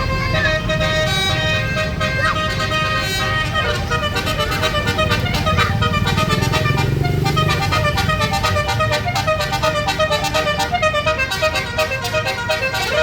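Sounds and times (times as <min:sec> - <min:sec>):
bus engine running low: 0:00.0 - 0:13.0
multi-tone bus horn melody: 0:00.0 - 0:13.0.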